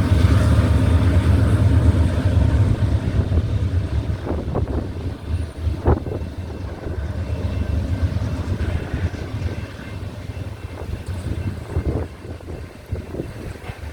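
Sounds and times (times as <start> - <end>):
freight train rumbling past: 0.0 - 13.9
wind buffeting microphone: 0.0 - 13.9.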